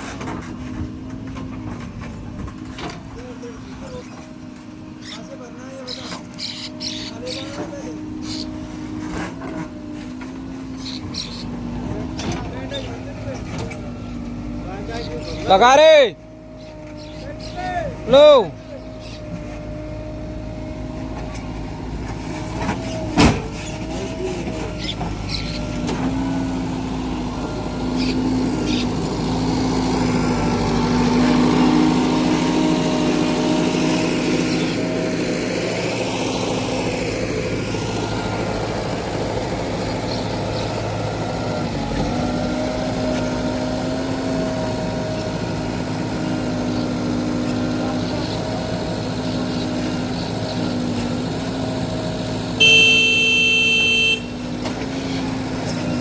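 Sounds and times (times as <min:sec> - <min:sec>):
heavy diesel engine running: 0:00.0 - 0:56.0
vehicle horn: 0:52.5 - 0:54.6.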